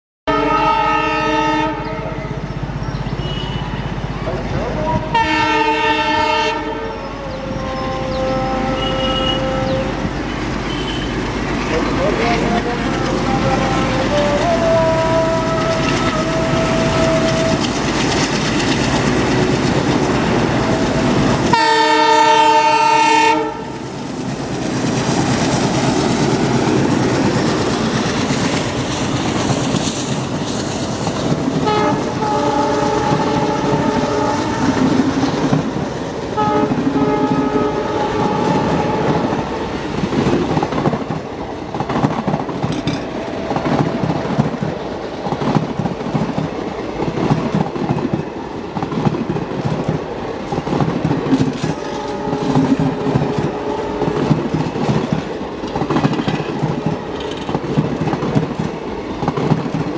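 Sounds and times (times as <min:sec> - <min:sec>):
locomotive horn blast: 0:00.3 - 0:02.5, 0:03.2 - 0:11.3, 0:12.2 - 0:18.0, 0:20.2 - 0:23.8, 0:31.5 - 0:35.4, 0:36.3 - 0:39.8, 0:51.6 - 0:54.5
diesel locomotive engine chugging: 0:00.4 - 0:59.9
wheels clattering over rail joints: 0:17.0 - 0:21.8, 0:38.8 - 0:52.0, 0:54.1 - 0:59.9.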